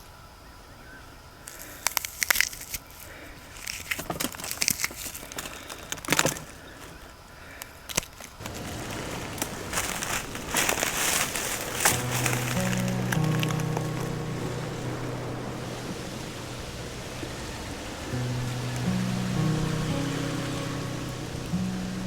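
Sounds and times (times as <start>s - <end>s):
crunching and crackling: 1.5s - 7.0s, 7.9s - 22.0s
steady hiss: 8.4s - 22.0s.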